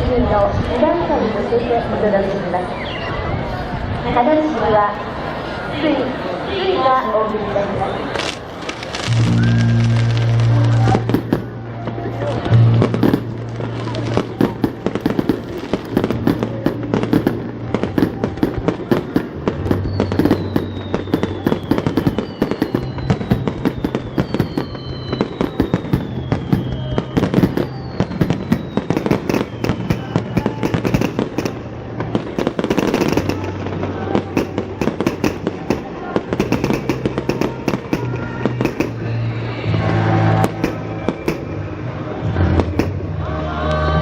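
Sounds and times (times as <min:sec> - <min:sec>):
falling firework whistles: 0:08.0 - 0:11.5, 0:14.2 - 0:31.6, 0:40.3 - 0:41.8
fireworks bursting and crackling: 0:08.0 - 0:39.6, 0:40.2 - 0:43.2.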